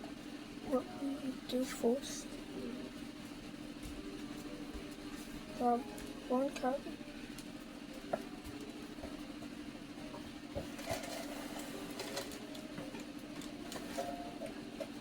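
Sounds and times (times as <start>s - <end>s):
steady mechanical hum: 0.0s - 15.0s.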